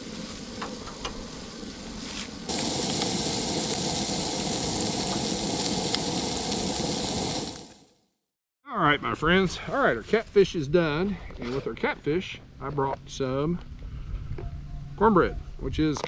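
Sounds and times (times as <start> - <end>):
fish sizzling in a frying pan: 2.5 - 7.9.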